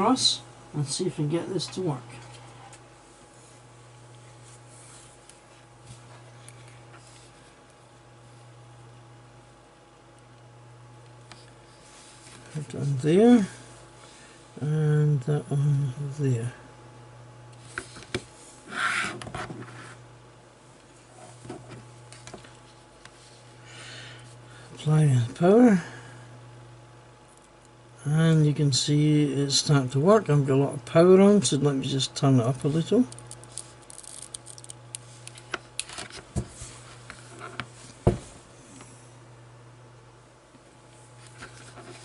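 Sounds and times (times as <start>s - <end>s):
steady low hum: 0.0s - 42.0s.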